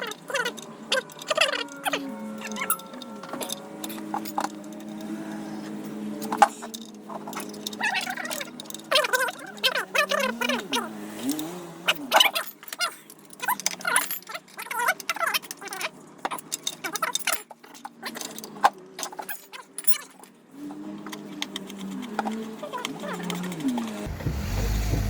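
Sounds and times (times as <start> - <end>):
metal tools clinking and rattling: 0.0 - 20.4, 21.0 - 24.1.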